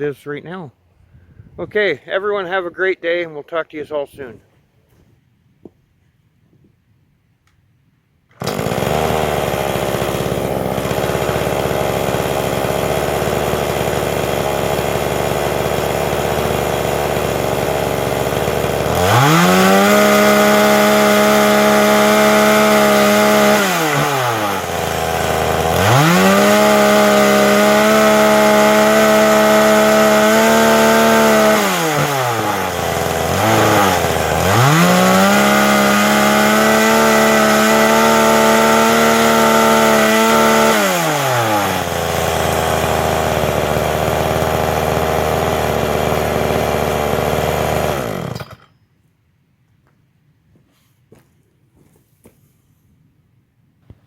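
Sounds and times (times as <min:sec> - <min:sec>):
chainsaw revving and cutting: 0:08.3 - 0:48.7.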